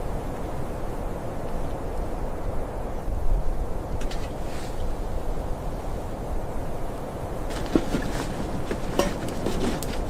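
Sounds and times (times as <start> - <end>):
faint scrapes: 7.5 - 10.0.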